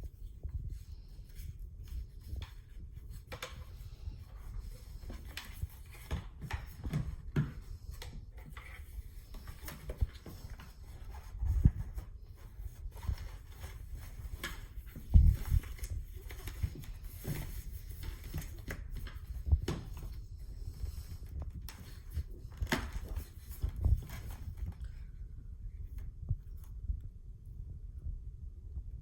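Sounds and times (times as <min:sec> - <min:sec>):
packaging handling knocks and rubs: 0:00.1 - 0:25.0.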